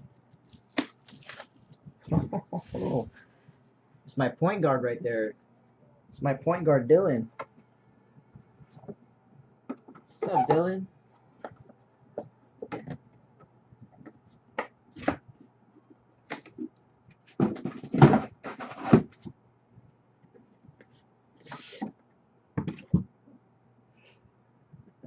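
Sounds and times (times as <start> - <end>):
packaging rustling: 0.3 - 1.8.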